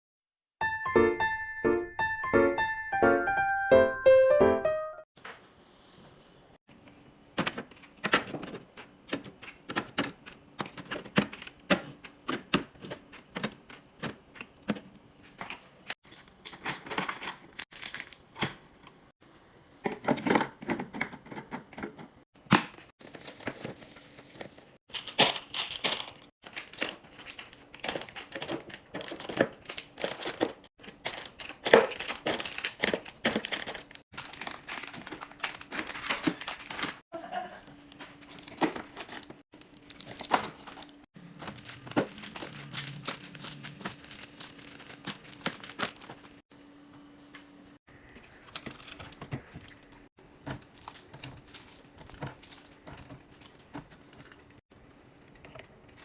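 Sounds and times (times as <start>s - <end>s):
plastic crinkling: 23.0s - 37.0s, 38.2s - 46.4s.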